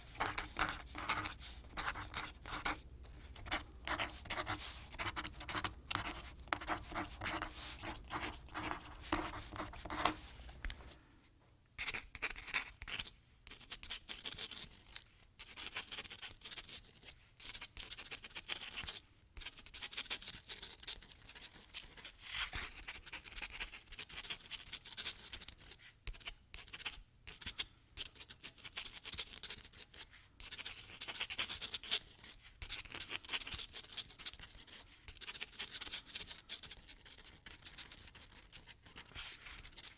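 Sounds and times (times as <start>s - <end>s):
scratching and rubbing strokes: 0.0s - 11.0s.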